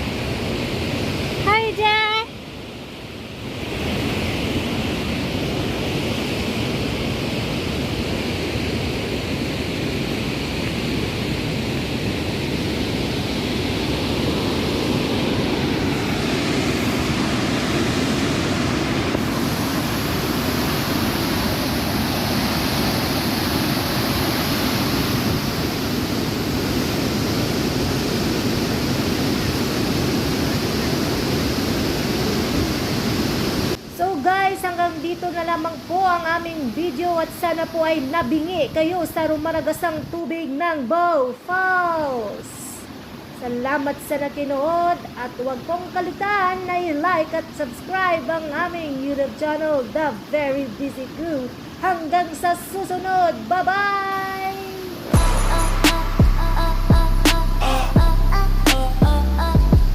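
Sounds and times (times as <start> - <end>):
waterfall rushing: 3.0 - 33.9, 51.5 - 59.9.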